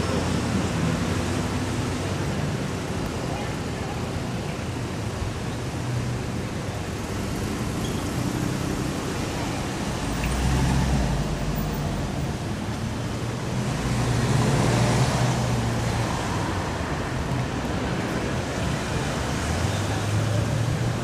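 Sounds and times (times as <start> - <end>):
traffic noise: 0.0 - 21.0.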